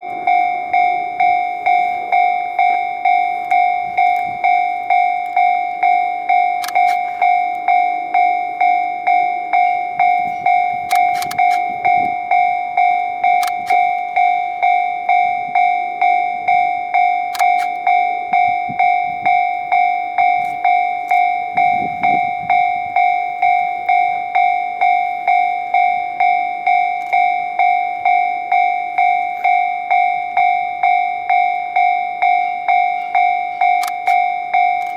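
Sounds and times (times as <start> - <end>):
level-crossing warning bell: 0.0 - 34.9
sharp clicks: 6.3 - 7.6, 10.0 - 12.2, 13.2 - 14.2, 17.3 - 18.9, 33.6 - 34.9.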